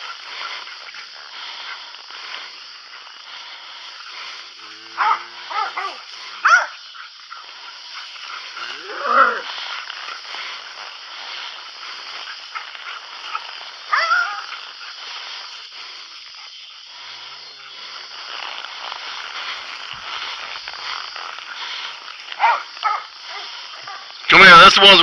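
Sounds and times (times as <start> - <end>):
steady outdoor hiss: 0.0 - 25.0
dog barking: 4.9 - 6.8, 13.3 - 14.5, 22.4 - 24.1.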